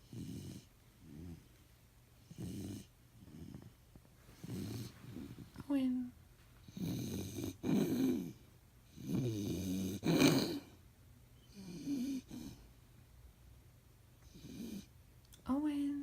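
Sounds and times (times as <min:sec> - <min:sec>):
dog making raspy throat noises: 0:06.6 - 0:10.8.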